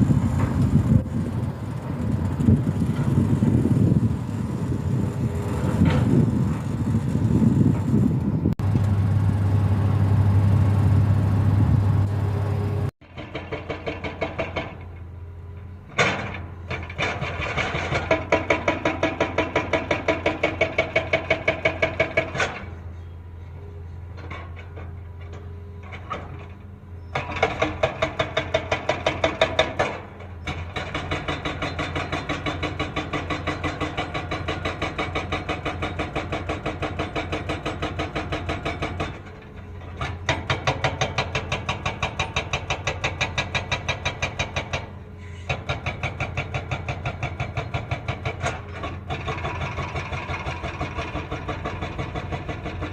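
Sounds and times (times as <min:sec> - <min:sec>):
diesel engine running: 0:00.0 - 0:18.5.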